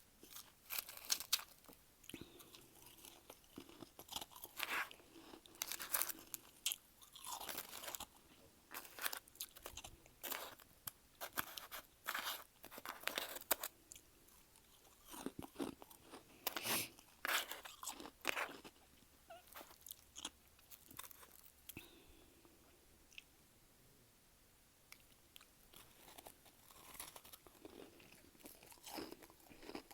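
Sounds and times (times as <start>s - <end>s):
chewing crunchy frost: 0.2s - 21.9s, 25.0s - 29.9s.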